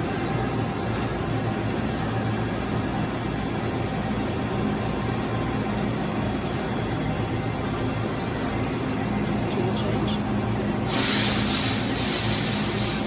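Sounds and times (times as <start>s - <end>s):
machinery hum: 0.0s - 13.0s.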